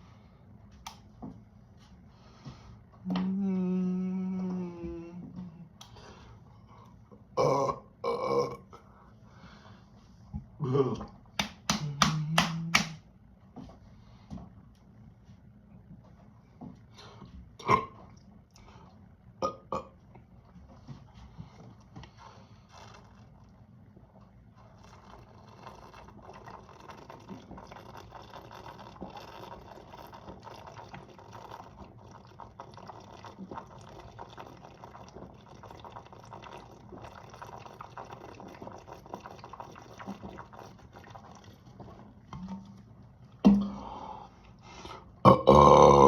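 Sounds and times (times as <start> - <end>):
person chugging from bottle: 10.5 - 11.2
soda fizzing: 22.1 - 23.6, 24.5 - 42.9.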